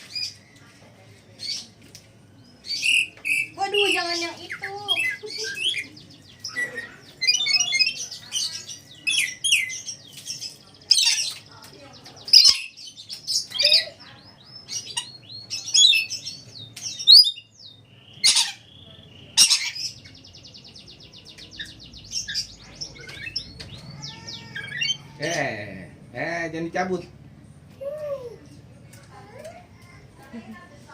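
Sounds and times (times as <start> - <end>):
parrot squawking and chirping: 2.6 - 10.0, 10.9 - 11.4, 12.3 - 14.0, 18.1 - 18.7, 19.4 - 20.1, 21.6 - 25.5.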